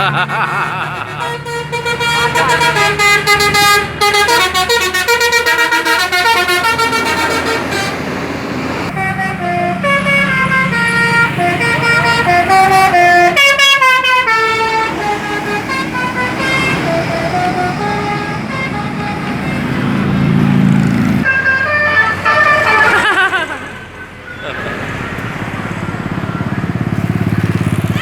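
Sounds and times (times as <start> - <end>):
bus engine running: 0.0 - 28.0
musical air horn tune: 1.1 - 8.1, 8.9 - 20.5, 21.2 - 24.4.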